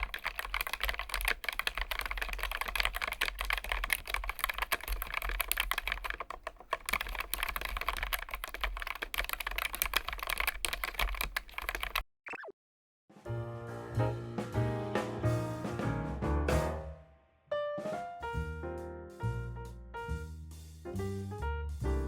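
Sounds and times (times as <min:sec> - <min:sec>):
mechanical keyboard typing: 0:00.0 - 0:12.0.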